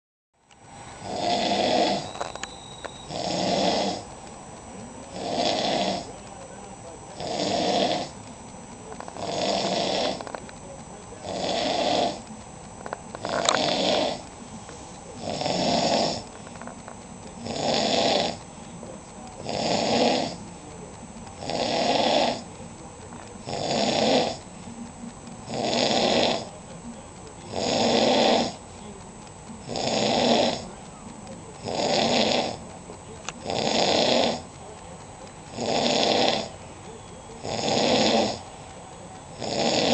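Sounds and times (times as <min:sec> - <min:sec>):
person snoring loudly: 0:01.0 - 0:02.1, 0:03.1 - 0:04.0, 0:05.1 - 0:06.1, 0:07.2 - 0:08.1, 0:09.2 - 0:10.2, 0:11.2 - 0:12.2, 0:13.2 - 0:14.2, 0:15.2 - 0:16.3, 0:17.4 - 0:18.4, 0:19.4 - 0:20.4, 0:21.4 - 0:22.4, 0:23.4 - 0:24.4, 0:25.5 - 0:26.5, 0:27.5 - 0:28.6, 0:29.6 - 0:30.6, 0:31.6 - 0:32.6, 0:33.4 - 0:34.4, 0:35.5 - 0:36.5, 0:37.4 - 0:38.4, 0:39.4 - 0:39.9.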